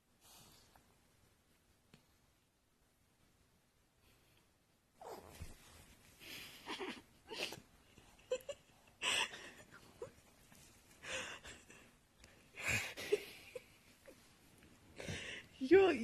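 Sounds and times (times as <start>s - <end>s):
person wheezing breaths: 15.0s - 15.5s.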